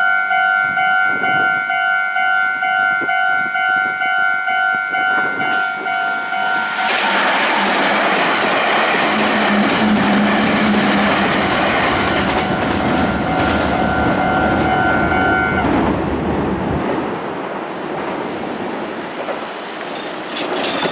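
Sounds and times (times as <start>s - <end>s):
steady high tone: 0.0s - 7.2s, 11.4s - 15.8s
electric train passing: 0.0s - 20.9s
wheels clattering over rail joints: 6.4s - 14.9s, 17.8s - 20.9s.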